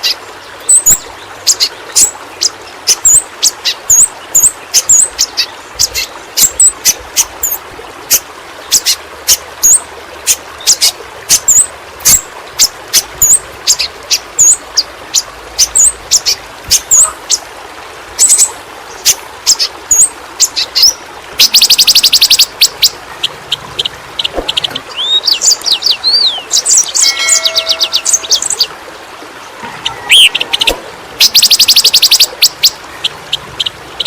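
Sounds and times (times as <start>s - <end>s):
bird whistles: 24.9s - 28.7s, 29.8s - 32.3s
bird chip notes: 26.2s - 28.7s, 29.6s - 32.7s.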